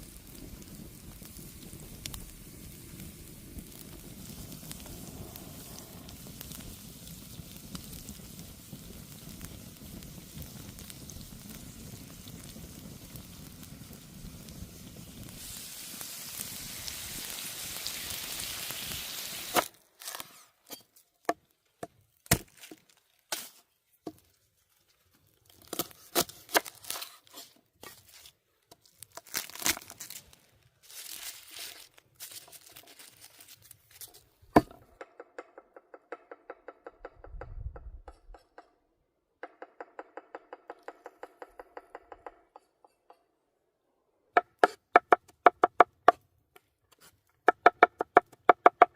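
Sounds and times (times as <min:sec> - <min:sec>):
food sizzling: 0:00.0 - 0:20.4.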